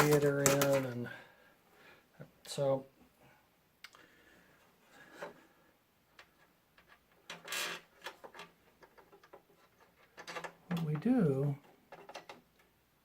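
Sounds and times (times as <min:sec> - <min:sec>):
rubbing and scraping: 0:00.0 - 0:01.0.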